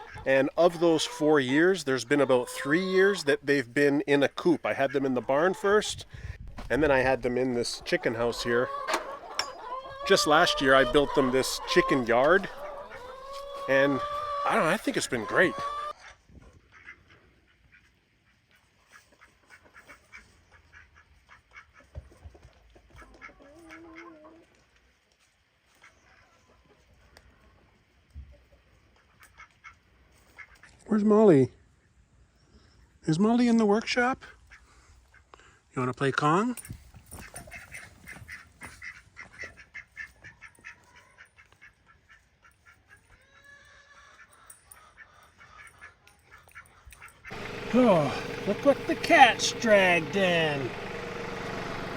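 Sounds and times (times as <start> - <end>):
long pitched poultry call: 0.0 - 3.2, 8.0 - 17.2, 38.3 - 45.9, 46.7 - 51.9
poultry clucking: 0.0 - 6.1, 6.7 - 24.5, 25.7 - 30.8, 37.1 - 51.9
waterfowl honking: 7.7 - 17.2, 44.2 - 51.9.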